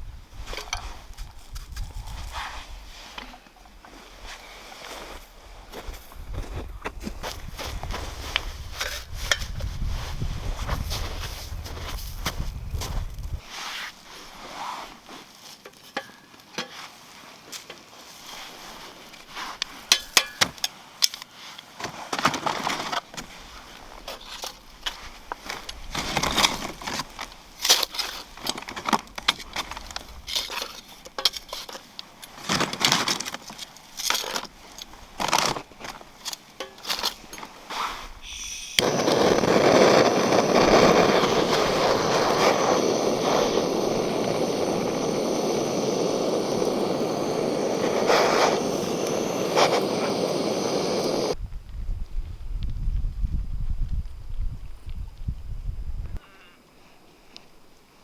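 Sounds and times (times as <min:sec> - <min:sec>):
loud steady rushing noise: 0:38.8 - 0:51.4.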